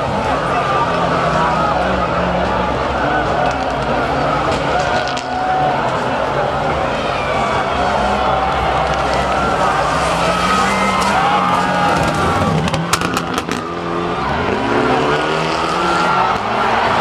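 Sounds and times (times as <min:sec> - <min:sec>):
rally car engine revving: 0:00.0 - 0:17.0
sharp exhaust cracks: 0:08.4 - 0:14.0.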